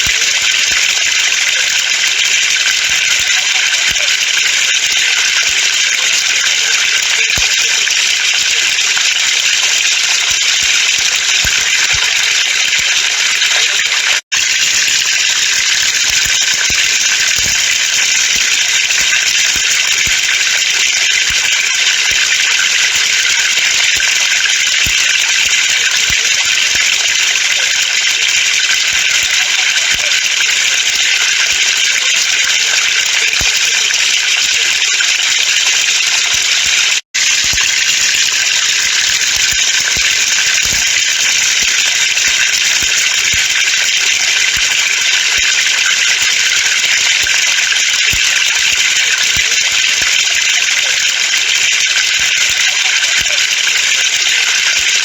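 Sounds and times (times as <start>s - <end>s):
water stream from a pipe: 0.0s - 55.0s.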